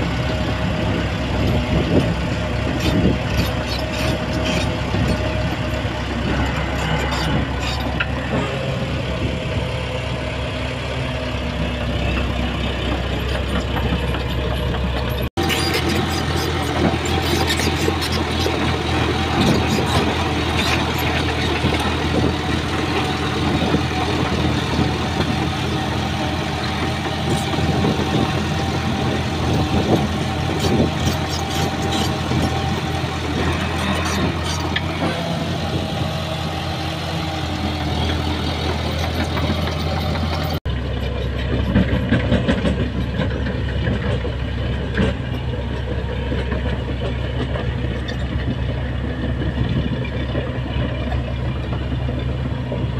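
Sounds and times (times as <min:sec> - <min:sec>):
bulldozer diesel engine running: 0:00.0 - 0:52.9
dull deep engine running: 0:00.0 - 0:52.9
clanks and rattles: 0:12.1 - 0:52.9.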